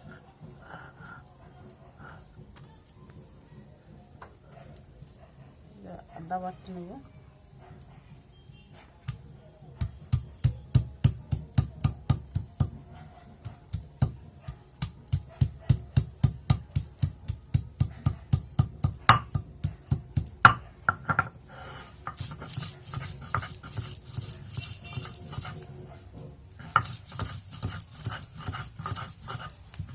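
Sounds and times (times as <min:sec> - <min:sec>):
stone grinding knocks: 0:18.6 - 0:21.4, 0:22.0 - 0:25.6, 0:26.6 - 0:29.9
scraping on stone: 0:20.5 - 0:29.9.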